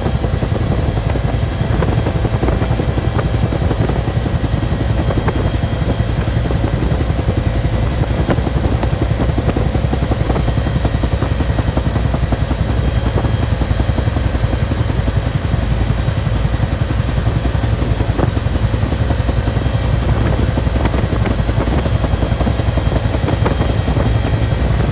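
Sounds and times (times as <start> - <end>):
helicopter rotor rumble: 0.0 - 24.9.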